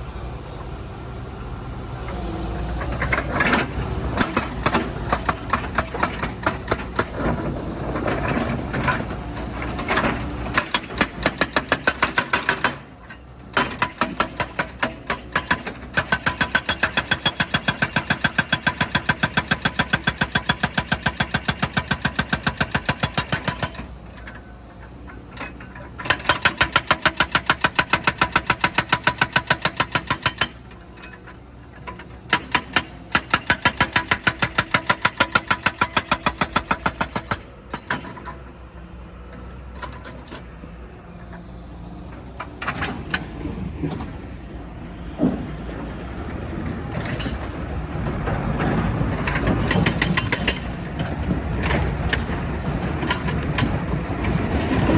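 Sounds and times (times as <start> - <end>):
machinery hammering rock: 4.2 - 7.5, 10.5 - 12.9, 13.5 - 23.9, 32.3 - 38.3
engine rumble: 37.4 - 54.9.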